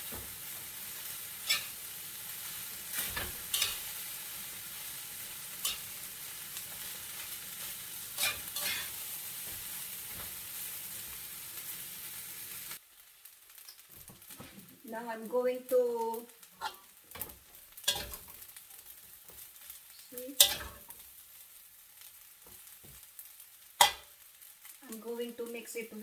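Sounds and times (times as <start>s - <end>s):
food sizzling in a pan: 0.0s - 26.0s
utensil scraping against pan: 1.3s - 1.9s, 2.9s - 4.0s, 5.6s - 6.0s, 6.6s - 10.3s, 16.6s - 19.5s, 20.3s - 21.0s, 23.8s - 24.1s.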